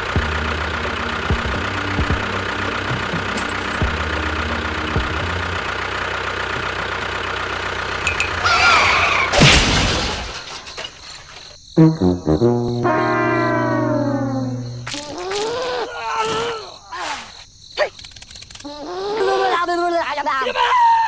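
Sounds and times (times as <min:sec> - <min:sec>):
engine running: 0:00.0 - 0:11.0, 0:12.0 - 0:15.0
crash: 0:08.0 - 0:11.6.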